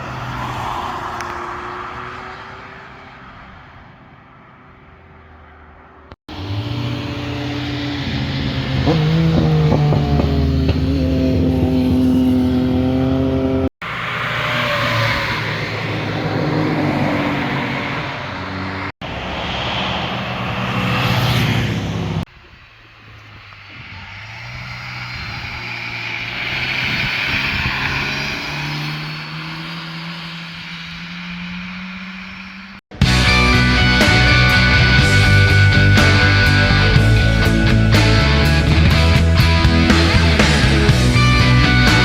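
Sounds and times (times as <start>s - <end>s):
car approaching: 0.0s - 42.0s
cars accelerating past: 0.0s - 42.0s.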